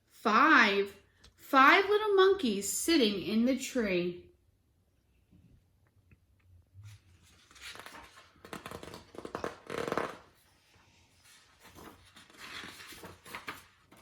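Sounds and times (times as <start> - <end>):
paper pages rustling: 6.9 - 14.0.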